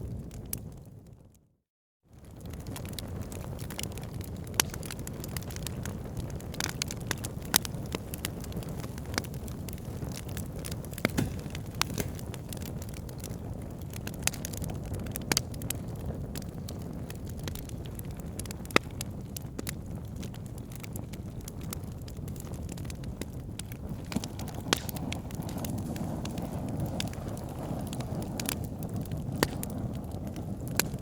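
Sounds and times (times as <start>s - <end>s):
wood fire crackling: 0.1s - 1.2s, 2.2s - 31.0s.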